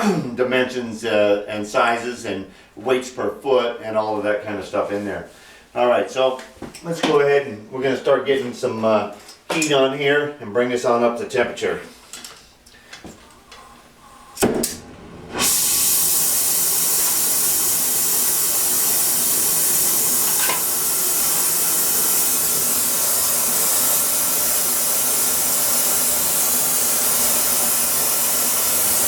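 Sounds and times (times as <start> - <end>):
gas torch hissing: 13.6 - 29.0
gas torch ignition pop: 14.4 - 29.0.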